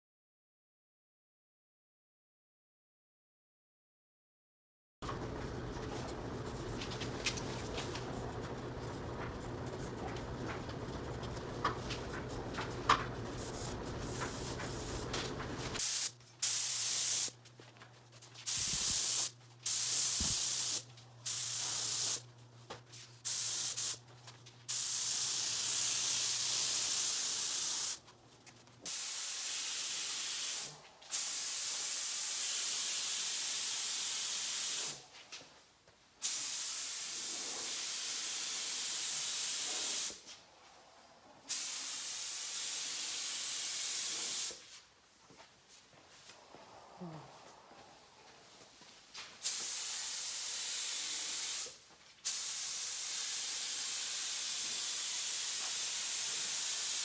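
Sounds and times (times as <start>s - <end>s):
steady hum: 5.0s - 16.4s
air gun hissing: 5.0s - 17.4s, 18.4s - 22.2s, 23.2s - 24.0s, 24.7s - 28.0s, 28.8s - 35.0s, 36.2s - 40.2s, 41.5s - 44.6s, 49.4s - 57.0s.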